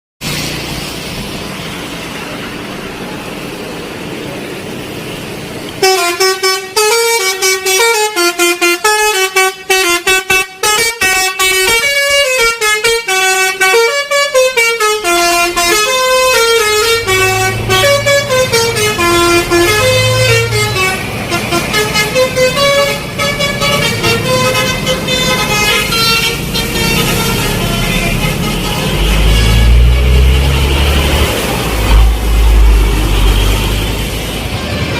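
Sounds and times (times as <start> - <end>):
steady background noise: 0.2 - 5.9
bus musical horn playing a tune: 5.8 - 34.9.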